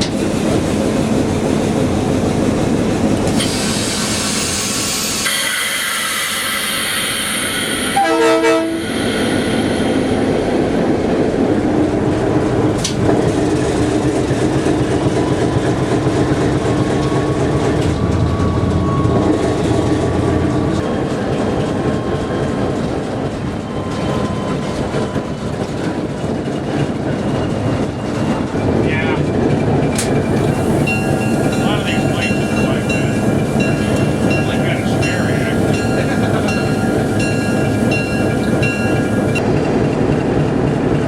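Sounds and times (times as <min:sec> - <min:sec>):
train engine rumble: 0:00.0 - 0:41.0
train wheels on rails: 0:00.0 - 0:41.0
locomotive horn blast: 0:07.9 - 0:09.0.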